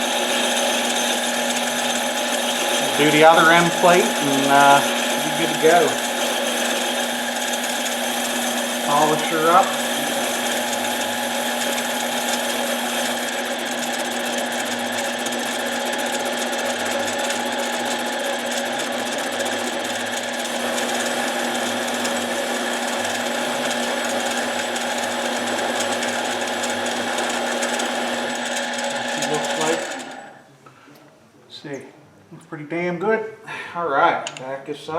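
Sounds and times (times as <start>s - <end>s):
lathe motor whining: 0.0s - 30.4s
polishing hiss: 2.8s - 6.9s, 8.1s - 11.4s.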